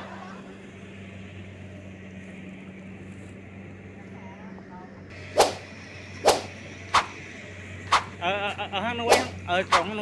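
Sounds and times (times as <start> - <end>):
low machine hum: 0.0 - 10.0
sharp swishing cracks: 5.2 - 7.2, 7.9 - 8.2, 9.0 - 10.0.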